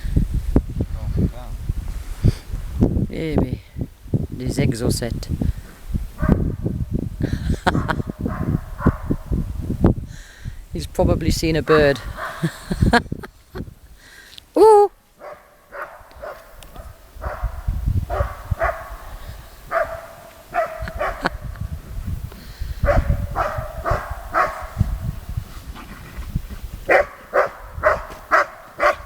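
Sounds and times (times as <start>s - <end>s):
dog barking and yelping: 7.7s - 9.3s, 11.7s - 12.5s, 15.2s - 16.6s, 17.2s - 21.4s, 22.8s - 24.9s, 26.9s - 29.0s.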